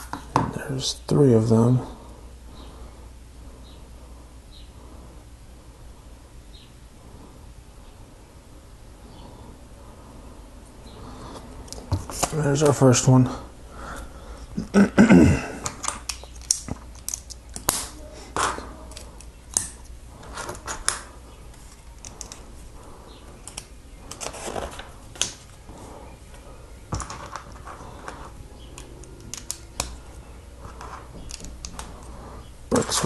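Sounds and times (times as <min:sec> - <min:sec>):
plastic bricks clicking together: 0:15.6 - 0:19.8.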